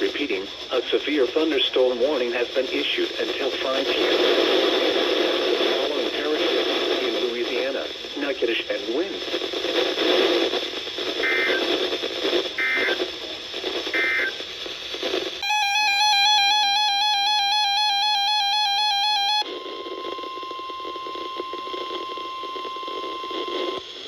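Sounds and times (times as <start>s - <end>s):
radio noise: 0.0s - 16.7s, 18.0s - 24.0s
steady warning tone: 11.1s - 13.1s, 13.9s - 14.4s, 15.4s - 24.0s
harsh electronic attention tone: 11.2s - 11.8s, 12.6s - 13.0s, 13.9s - 14.4s, 15.4s - 23.8s.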